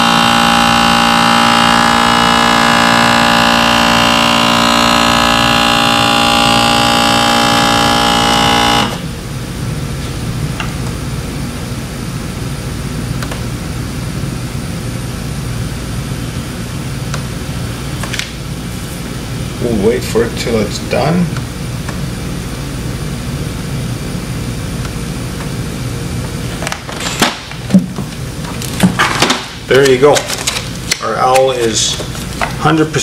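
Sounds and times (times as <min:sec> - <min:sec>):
vacuum sealer pump whining: 0:00.0 - 0:14.3.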